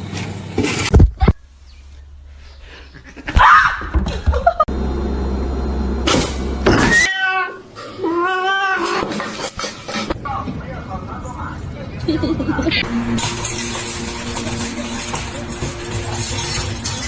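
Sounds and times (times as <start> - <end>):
cat meowing: 6.9 - 9.0.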